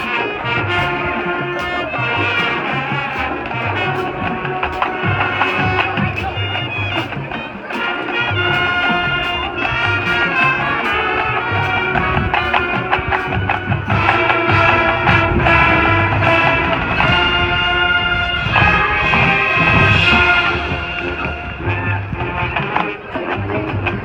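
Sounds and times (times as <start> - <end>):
marching band playing: 0.0 - 24.0.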